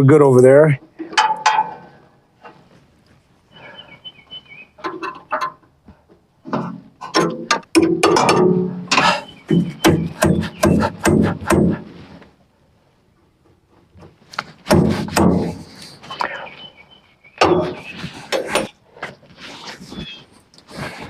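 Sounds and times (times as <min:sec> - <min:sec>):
metal clanks and knocks: 0:00.9 - 0:02.0, 0:04.8 - 0:11.9, 0:13.4 - 0:15.6.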